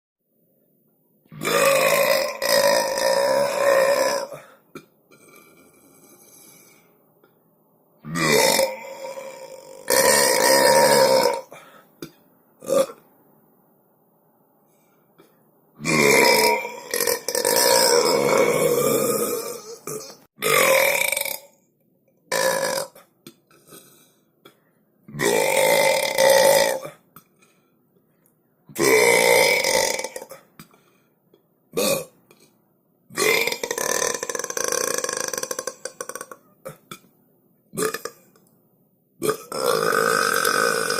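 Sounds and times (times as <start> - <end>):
person belching loudly: 1.3 - 4.5, 8.0 - 11.6, 15.8 - 21.6, 22.3 - 23.1, 25.1 - 27.0, 28.8 - 30.4, 31.8 - 32.2, 33.2 - 37.1, 37.8 - 38.2, 39.2 - 40.9.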